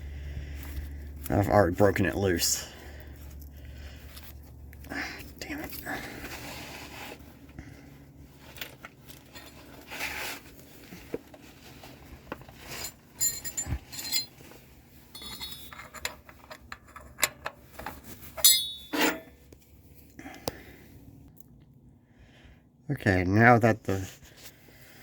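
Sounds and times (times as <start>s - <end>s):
metal hand tools clinking: 12.7s - 14.4s, 15.1s - 16.2s, 18.4s - 19.3s.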